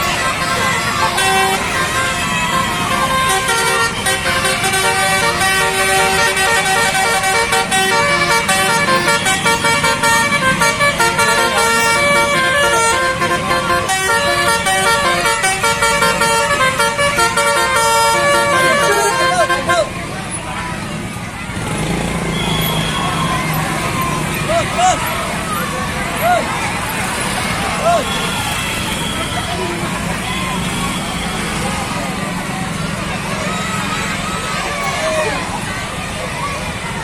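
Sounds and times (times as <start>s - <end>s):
bus musical horn tooting: 0.0s - 20.2s, 21.6s - 25.1s.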